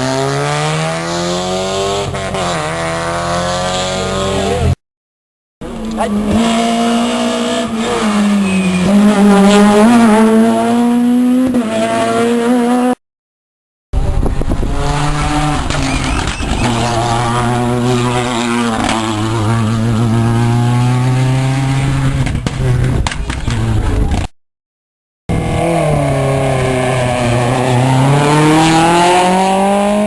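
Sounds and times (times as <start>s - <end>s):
rally car engine at high revs: 0.0s - 4.8s, 5.6s - 13.0s, 14.0s - 24.3s, 25.3s - 30.0s
rally car engine at steady lower pitch: 14.0s - 24.2s.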